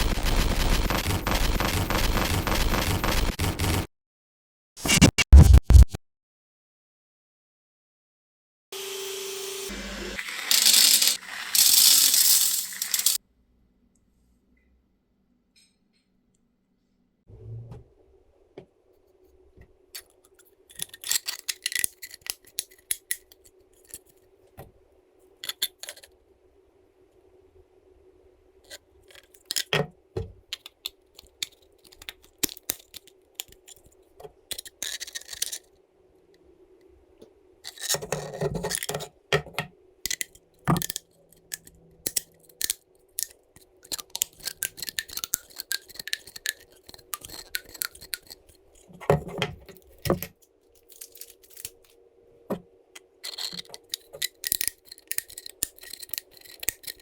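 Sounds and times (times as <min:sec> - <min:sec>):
plastic parts clicking and scraping: 0:10.5 - 0:13.2, 0:20.0 - 0:24.6, 0:25.4 - 0:26.1, 0:28.6 - 0:35.8, 0:37.6 - 0:57.0.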